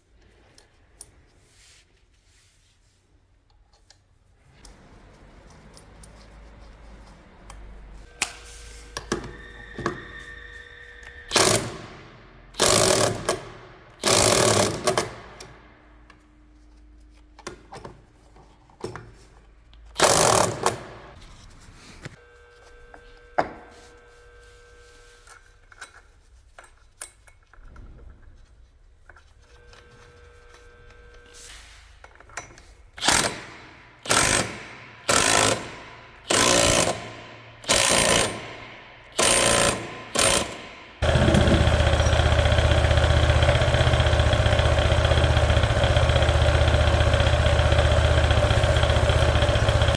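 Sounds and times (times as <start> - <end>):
power tool bursts: 11.3 - 12.0, 12.6 - 15.0, 33.0 - 38.6, 39.2 - 43.4.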